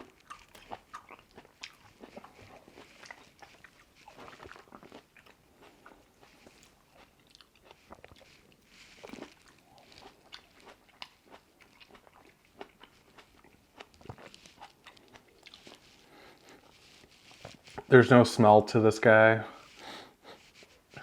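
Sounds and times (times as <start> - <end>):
person chewing grapes: 0.0 - 18.0.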